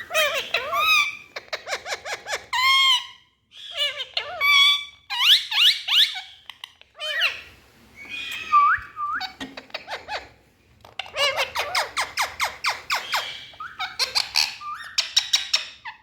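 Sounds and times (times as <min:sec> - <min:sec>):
parrot squawking: 0:00.0 - 0:07.5, 0:11.0 - 0:16.0.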